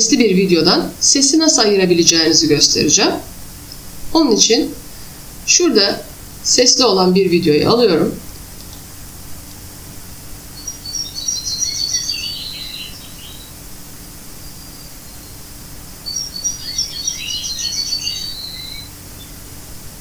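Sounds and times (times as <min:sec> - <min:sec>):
background hiss: 0:00.0 - 0:20.0
songbird singing: 0:10.4 - 0:19.8.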